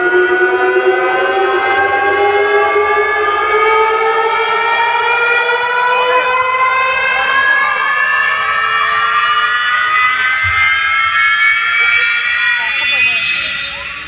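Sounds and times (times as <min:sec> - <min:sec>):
siren wail through loudspeakers: 0:00.0 - 0:14.0.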